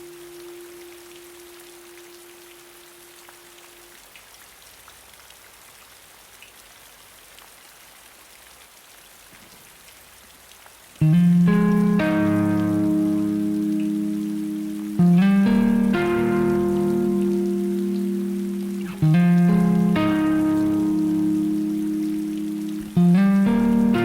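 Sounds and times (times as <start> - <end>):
steady rain falling: 0.0 - 24.0
raindrop ticks: 9.3 - 24.0
loud guitar chord: 11.0 - 24.0
sustained guitar note: 11.0 - 24.0.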